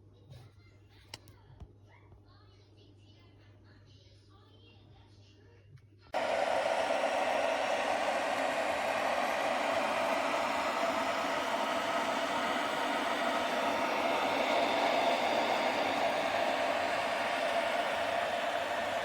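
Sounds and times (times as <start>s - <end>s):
electric kettle rushing: 6.2s - 19.0s.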